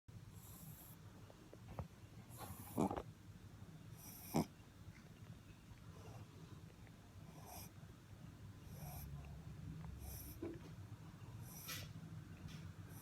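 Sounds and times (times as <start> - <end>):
puppy snoring: 0.3 - 1.0, 2.2 - 3.1, 3.9 - 4.6, 7.2 - 7.8, 8.6 - 10.6, 11.4 - 11.9
sharp snort: 2.3 - 3.0, 4.0 - 4.5.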